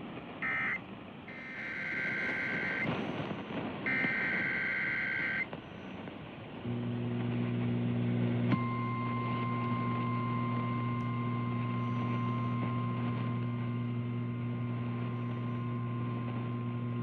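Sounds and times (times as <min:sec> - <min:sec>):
low electrical hum: 0:00.0 - 0:17.0
steady high alarm tone: 0:00.4 - 0:02.9, 0:03.9 - 0:05.4.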